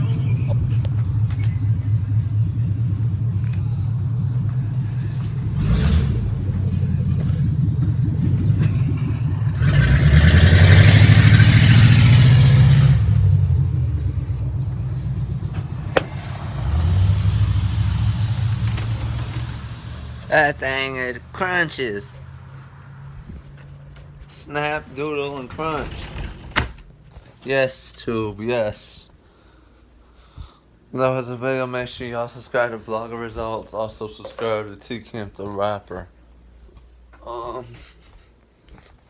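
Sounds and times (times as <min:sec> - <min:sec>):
vehicle rumble from inside cabin: 0:00.0 - 0:20.8.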